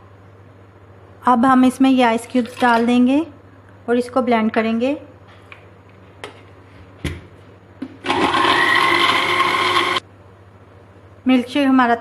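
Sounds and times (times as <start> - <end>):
blender running: 8.0 - 10.0.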